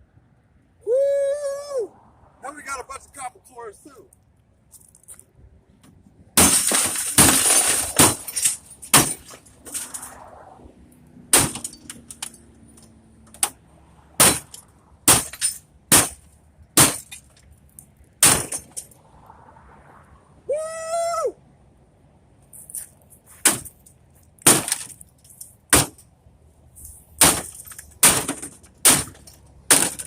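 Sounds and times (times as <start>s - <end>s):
glass shattering: 6.4s - 10.0s, 14.2s - 16.2s, 16.8s - 17.4s.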